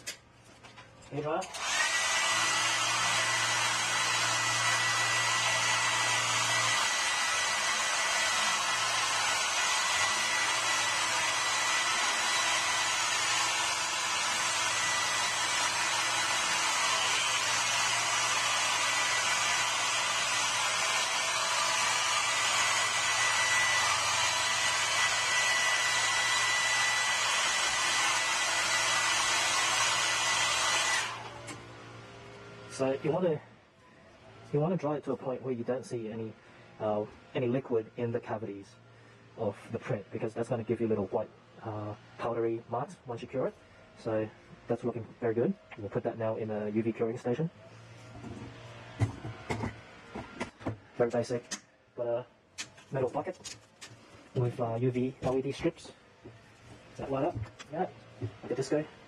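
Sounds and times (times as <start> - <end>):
hair dryer blowing air: 1.4 - 33.2, 47.9 - 50.7, 56.2 - 59.0.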